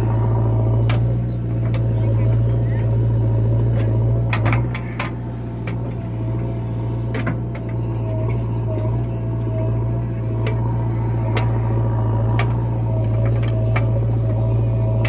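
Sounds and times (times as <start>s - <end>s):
diesel engine droning: 0.0s - 15.0s
sharp clicks and knocks: 3.6s - 6.1s.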